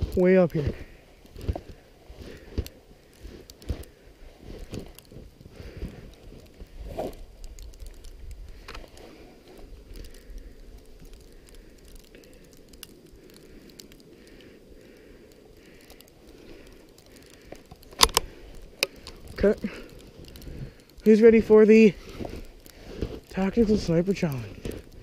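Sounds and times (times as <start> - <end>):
faint crackles and crunches: 0.0 - 25.0
wind rumble on microphone: 4.4 - 8.7.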